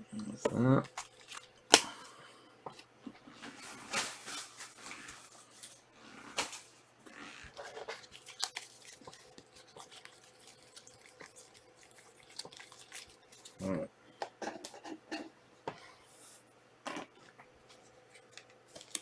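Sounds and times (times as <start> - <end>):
card wrappers rustling and crinkling: 0.5 - 13.6, 17.6 - 19.0.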